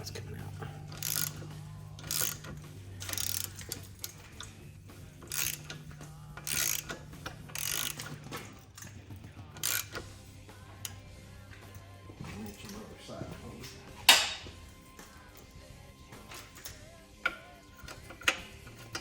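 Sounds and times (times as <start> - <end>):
socket ratchet clicking: 0.8 - 4.6, 5.2 - 11.1.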